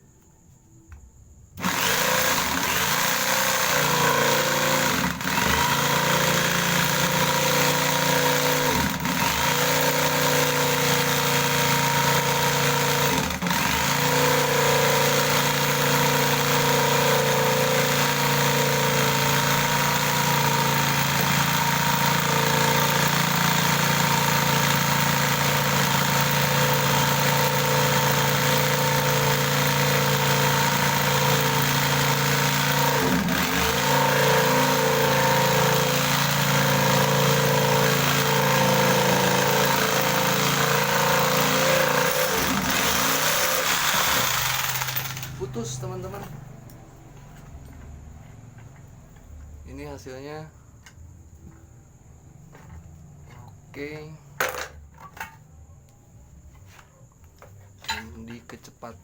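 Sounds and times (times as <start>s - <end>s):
electric jigsaw sawing wood: 1.6s - 45.6s.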